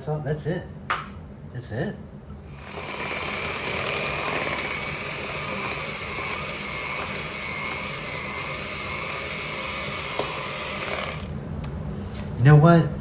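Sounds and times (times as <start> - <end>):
electric mixer running: 2.5 - 11.4.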